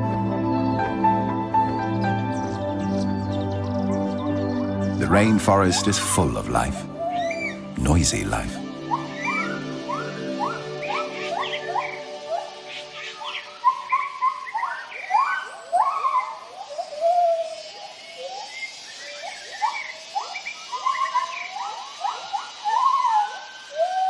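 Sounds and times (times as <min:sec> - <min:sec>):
gibbons hooting: 0:05.0 - 0:24.0.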